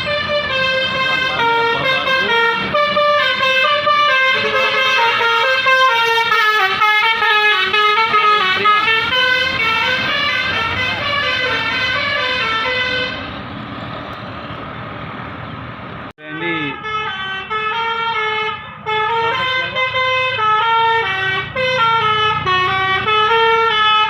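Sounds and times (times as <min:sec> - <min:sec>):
bus musical horn playing tune: 0:00.0 - 0:13.3, 0:16.4 - 0:24.0
engine and road noise: 0:00.0 - 0:24.0.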